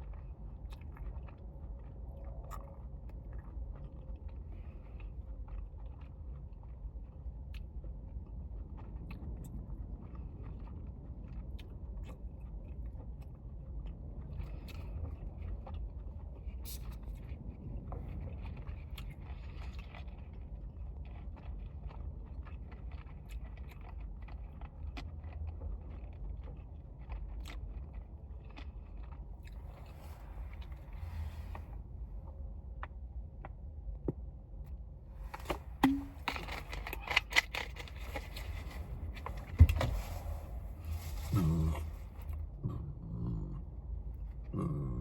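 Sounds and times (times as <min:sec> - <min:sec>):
person chewing noodles: 0:00.0 - 0:33.6.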